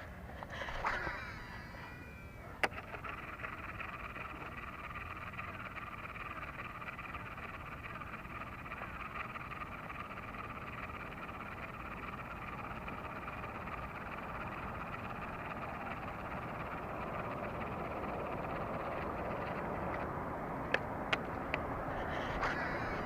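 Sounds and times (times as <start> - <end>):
low rumbling noise: 0.0 - 23.0
frogs calling: 0.4 - 23.0.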